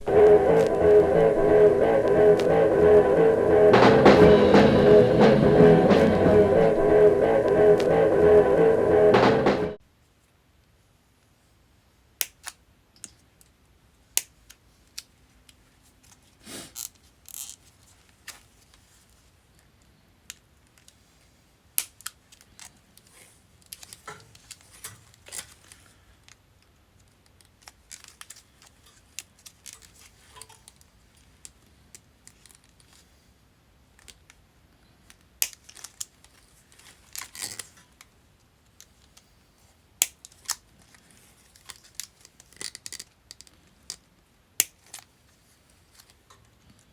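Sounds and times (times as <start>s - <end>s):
plastic sheathing snipping and cracking: 12.2s - 13.5s, 14.2s - 16.2s, 21.8s - 25.6s, 35.1s - 38.1s, 40.0s - 40.7s, 41.5s - 45.1s.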